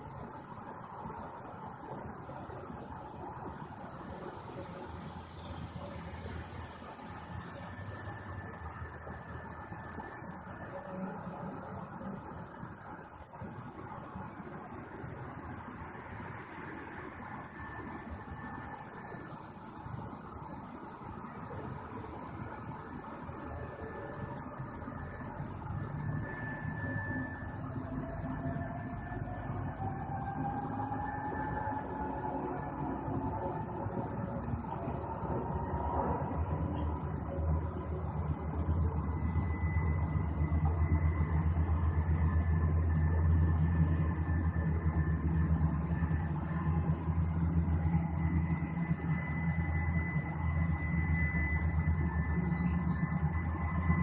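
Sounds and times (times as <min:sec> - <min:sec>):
faint high whine: 0:00.0 - 0:54.0
faint thin high tone: 0:44.8 - 0:54.0.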